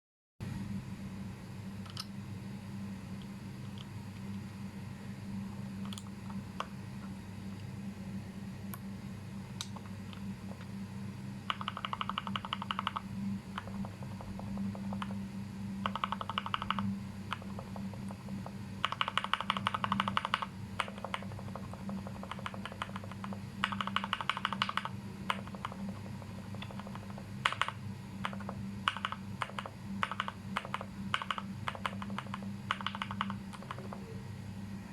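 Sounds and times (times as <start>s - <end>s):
mechanical keyboard typing: 11.5s - 15.2s, 15.8s - 34.1s.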